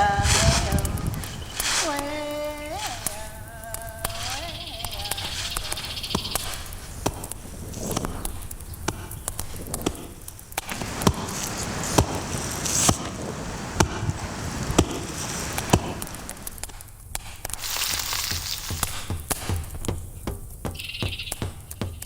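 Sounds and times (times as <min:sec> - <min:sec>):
background hiss: 0:00.0 - 0:22.0
sharp knocks: 0:05.5 - 0:16.8, 0:18.4 - 0:22.0.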